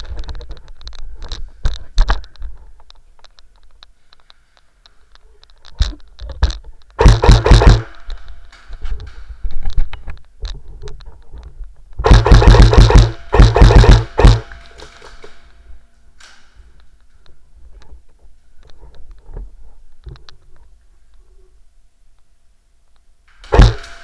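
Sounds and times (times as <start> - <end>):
airsoft gun full-auto bursts: 7.0 - 8.0, 12.0 - 14.6, 23.4 - 23.9
airsoft gun single shots: 7.0 - 8.0, 12.0 - 14.8, 23.4 - 24.0.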